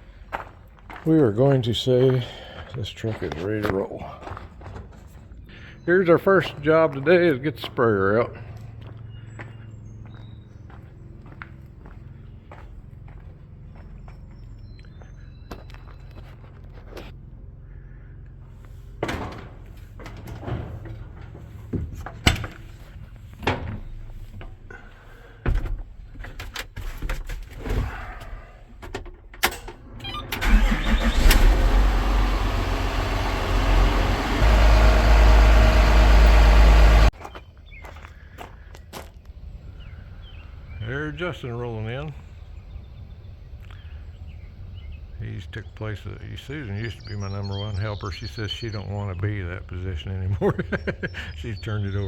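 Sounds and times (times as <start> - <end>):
knocks and clunks: 19.0 - 37.1
vehicle engine starting and running: 27.8 - 37.2.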